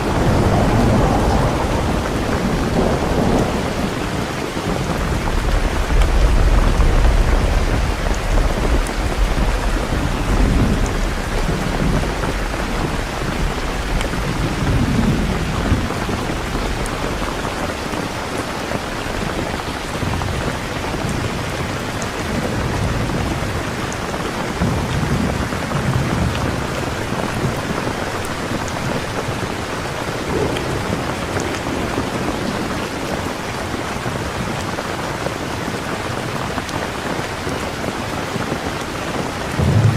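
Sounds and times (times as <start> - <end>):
rolling thunder rumbles: 0.0 - 35.8, 38.7 - 39.9
steady rain: 0.0 - 39.9.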